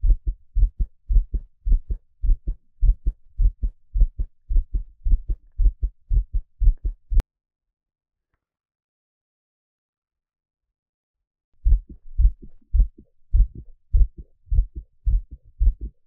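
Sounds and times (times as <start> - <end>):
heartbeat thuds: 0.0 - 7.2, 11.6 - 16.0.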